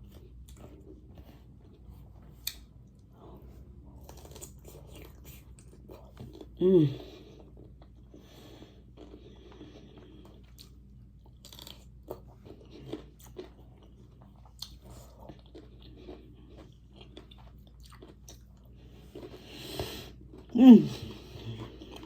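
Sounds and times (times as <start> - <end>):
person chewing food: 0.0 - 22.0.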